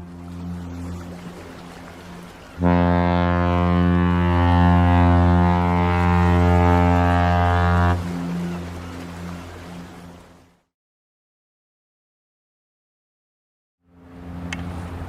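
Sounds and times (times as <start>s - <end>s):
ship horn deep blast: 0.0s - 10.4s, 13.9s - 15.0s.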